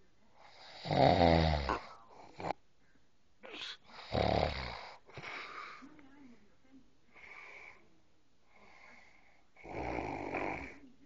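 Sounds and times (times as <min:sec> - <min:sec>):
man snoring: 0:00.5 - 0:02.5, 0:03.9 - 0:05.0, 0:09.6 - 0:10.8
breathy outbreath: 0:04.9 - 0:05.9.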